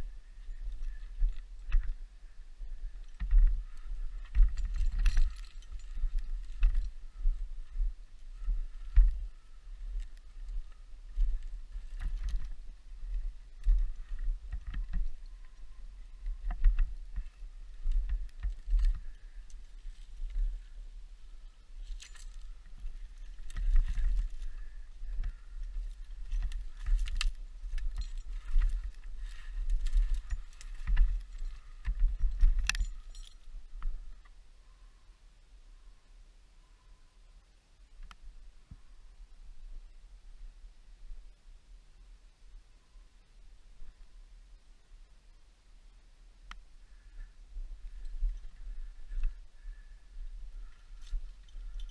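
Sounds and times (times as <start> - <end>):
metal gear clinking and jangling: 4.2 - 7.0, 21.8 - 24.6, 25.6 - 33.6, 50.6 - 51.9.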